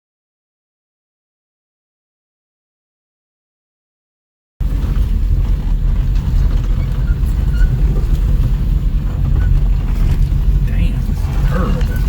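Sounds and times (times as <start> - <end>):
small engine rumbling: 4.6 - 12.0.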